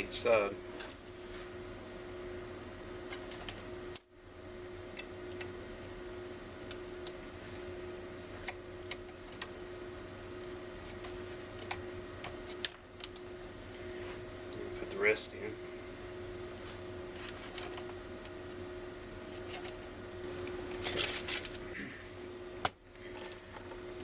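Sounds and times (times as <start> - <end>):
steady hum: 0.0 - 24.0.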